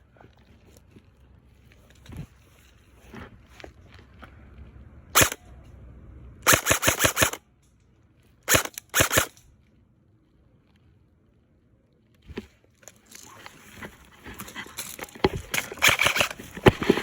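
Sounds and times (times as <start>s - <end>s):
airsoft gun firing: 5.2s - 5.4s, 6.4s - 7.4s, 8.5s - 9.4s, 15.8s - 17.0s.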